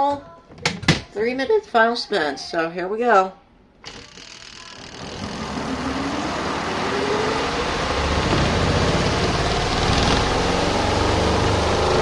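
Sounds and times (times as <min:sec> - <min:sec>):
washing machine spinning: 0:03.9 - 0:12.0.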